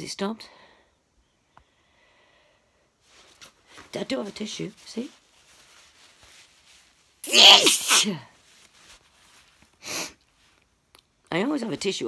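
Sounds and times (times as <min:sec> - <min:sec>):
woman sneezing: 0:07.2 - 0:08.2.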